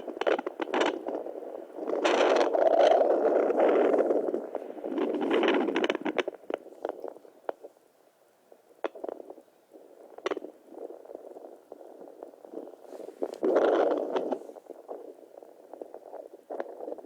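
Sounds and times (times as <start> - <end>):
faint swishing hiss: 12.0 - 15.5.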